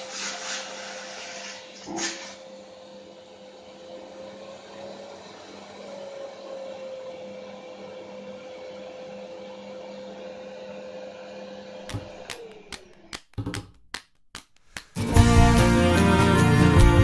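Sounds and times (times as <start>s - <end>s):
vacuum cleaner motor whining: 0.0s - 13.0s
sharp clicks and knocks: 11.9s - 15.1s.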